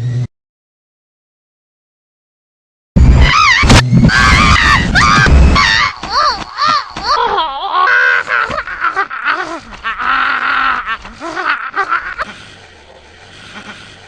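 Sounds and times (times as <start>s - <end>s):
squeaky cartoon voices wailing: 3.2s - 12.2s.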